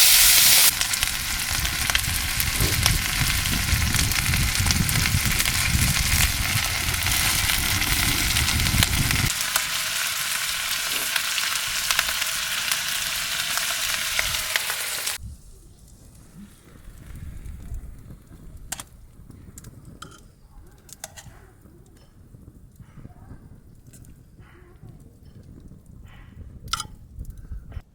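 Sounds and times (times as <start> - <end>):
food frying sizzle: 0.0 - 15.2.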